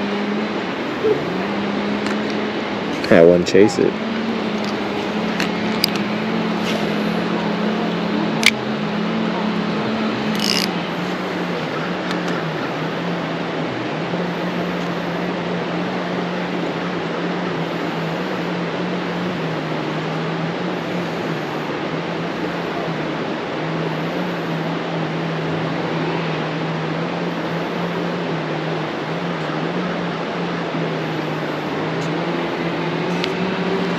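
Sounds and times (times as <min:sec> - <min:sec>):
creek water rushing: 0:00.0 - 0:33.9
sharp click: 0:08.4 - 0:08.6.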